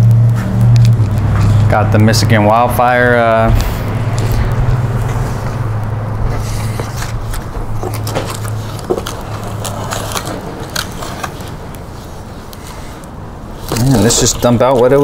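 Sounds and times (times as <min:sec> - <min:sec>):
steady low hum: 0:00.0 - 0:15.0
packaging being opened: 0:06.7 - 0:15.0.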